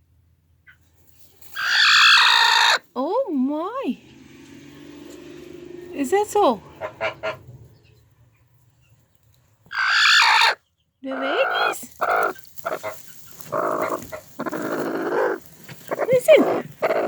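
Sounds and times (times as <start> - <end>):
hens screeching harshly: 1.4 - 2.9, 9.7 - 17.0.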